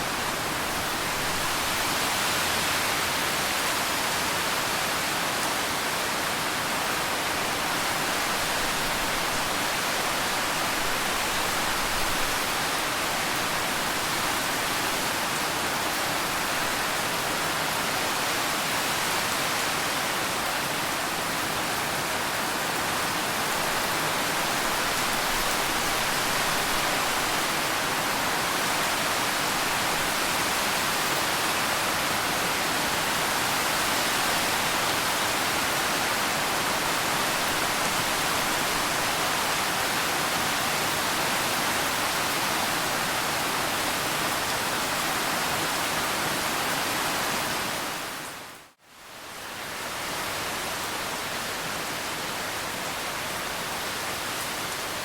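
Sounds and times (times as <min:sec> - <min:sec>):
steady rain falling: 0:00.0 - 0:55.0.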